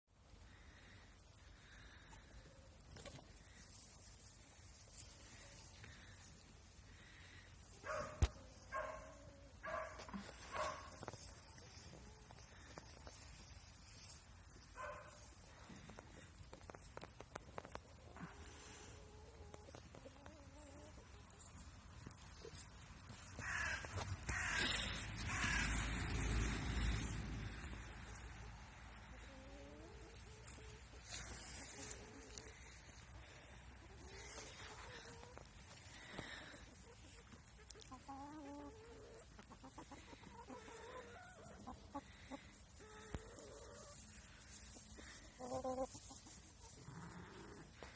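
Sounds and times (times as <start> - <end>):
chickens clucking and calling: 0.2 - 47.9
harsh caw-like animal calls: 23.3 - 26.9.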